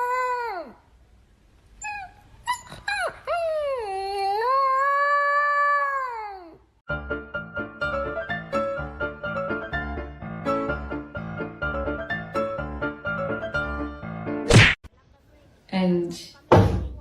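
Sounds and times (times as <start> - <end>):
dog yips and whimpers: 1.8 - 5.2
piano music: 6.9 - 14.5.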